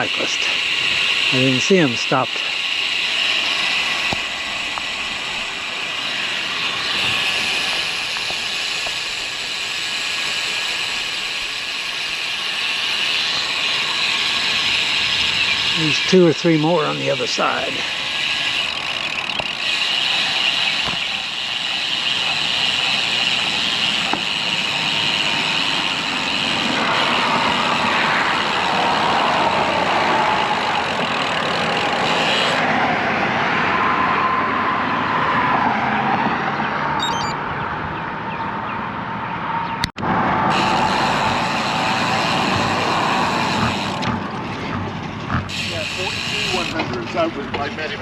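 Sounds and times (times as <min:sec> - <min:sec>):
traffic passing: 0:00.0 - 0:48.0
wind and road noise: 0:00.0 - 0:48.0
tyre whine: 0:40.0 - 0:47.4.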